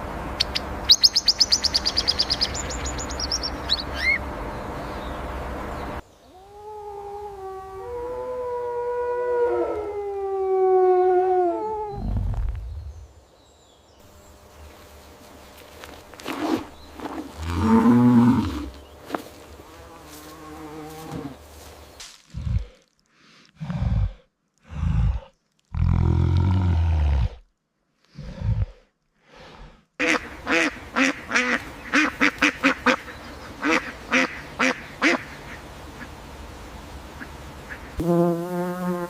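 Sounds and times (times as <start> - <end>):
ducks quacking: 30.0 - 36.1.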